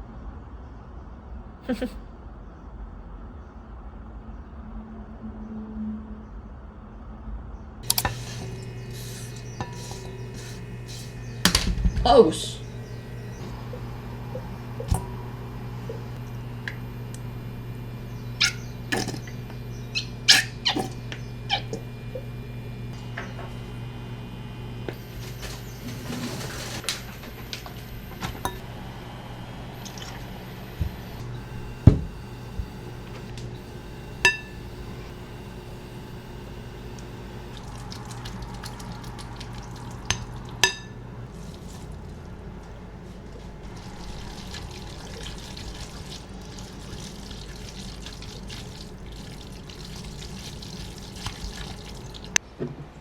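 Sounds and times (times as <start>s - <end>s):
running water hiss: 7.8s - 52.4s
steady low hum: 7.8s - 52.4s
kitchen clicks and knocks: 11.3s - 12.1s.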